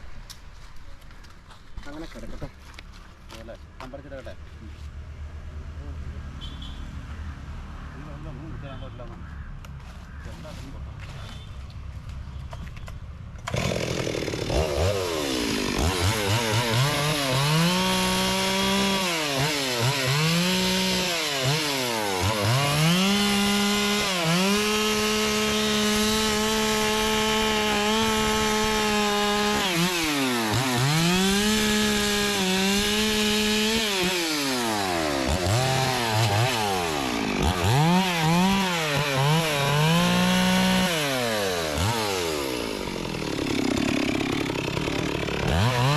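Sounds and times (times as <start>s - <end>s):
chainsaw cutting wood: 13.4s - 45.9s.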